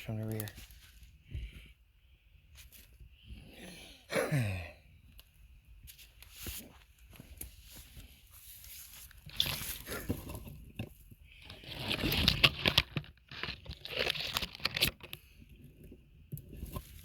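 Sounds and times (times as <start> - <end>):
light clicks and rustles: 0.0 - 1.1
person groaning: 3.6 - 4.8.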